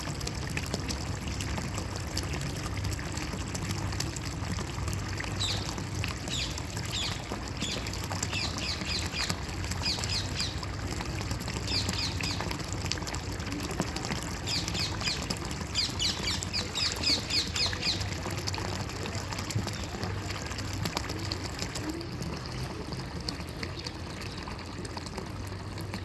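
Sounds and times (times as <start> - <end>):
running water: 0.0 - 26.0
small birds chirping: 6.3 - 10.7, 11.6 - 12.5, 14.5 - 18.1.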